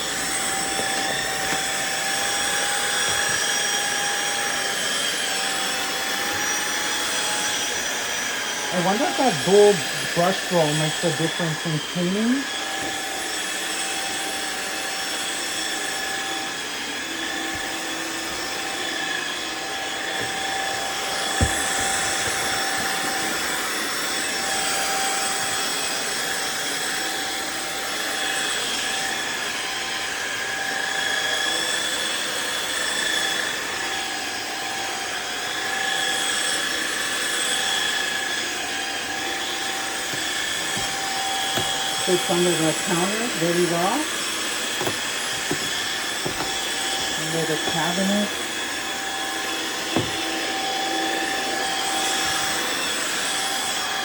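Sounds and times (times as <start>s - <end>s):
floor washer whining: 0.0s - 54.0s.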